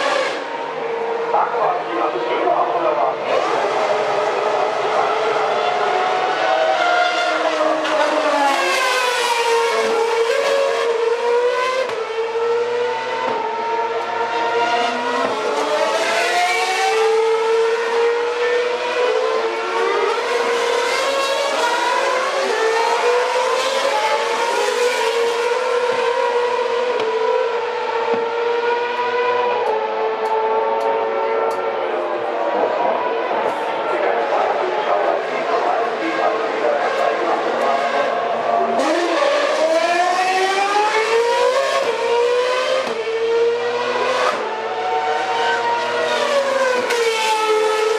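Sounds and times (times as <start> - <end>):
racing cars passing at high revs: 0.0 - 47.9.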